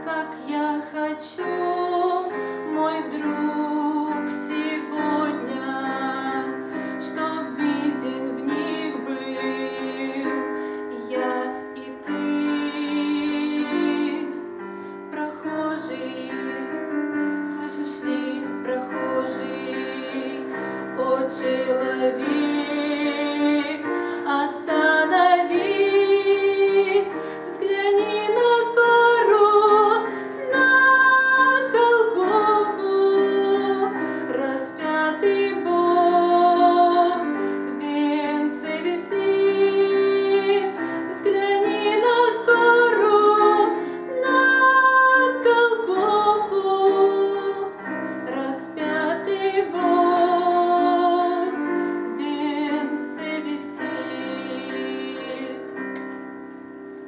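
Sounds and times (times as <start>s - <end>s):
woman singing: 0.0s - 56.3s
instrumental accompaniment: 0.0s - 57.0s.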